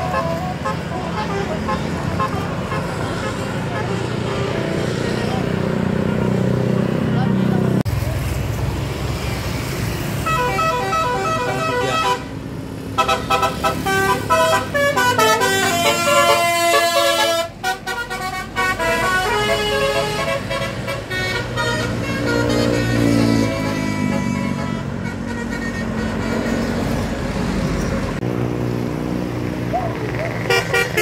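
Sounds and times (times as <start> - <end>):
bus musical horn tunes: 0.0 - 4.0, 10.2 - 12.4, 13.0 - 26.7, 30.5 - 31.0.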